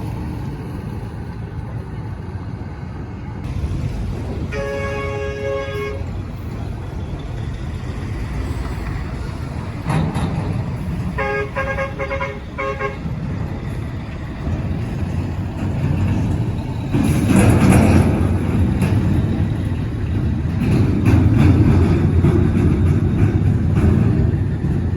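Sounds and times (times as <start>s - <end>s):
road traffic: 0.0s - 24.9s
vehicle horn honking: 4.5s - 6.1s, 11.2s - 13.0s.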